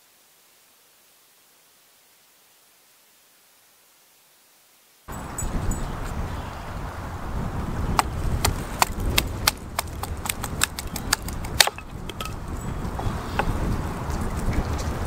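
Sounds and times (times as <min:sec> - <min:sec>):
sharp clicks and knocks: 0:08.0 - 0:12.4.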